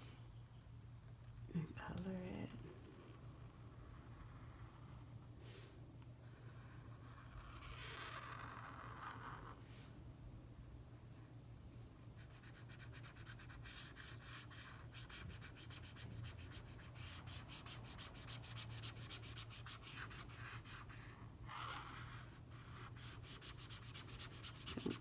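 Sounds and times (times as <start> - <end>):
marker scribbling on paper: 12.2 - 25.0.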